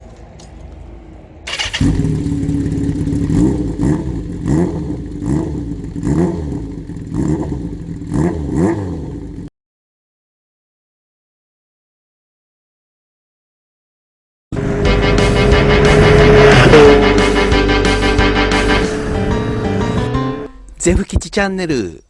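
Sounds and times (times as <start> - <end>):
motorcycle engine revving: 1.5 - 9.5, 14.6 - 20.5.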